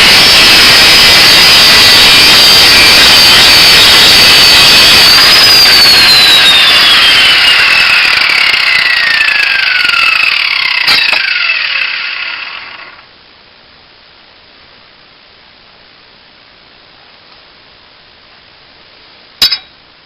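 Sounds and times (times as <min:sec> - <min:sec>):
angle grinder spinning down: 0:00.0 - 0:13.0.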